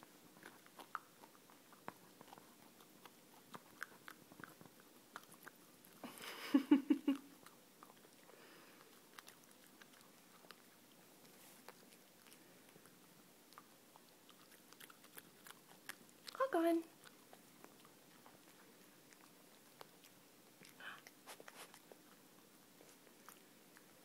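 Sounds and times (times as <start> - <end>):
dog chewing and crunching: 0.0 - 6.3, 7.2 - 24.0.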